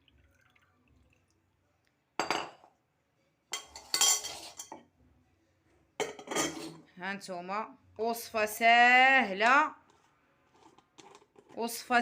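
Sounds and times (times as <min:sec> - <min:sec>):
utensils clattering against dishes: 0:03.6 - 0:04.8, 0:06.0 - 0:06.8.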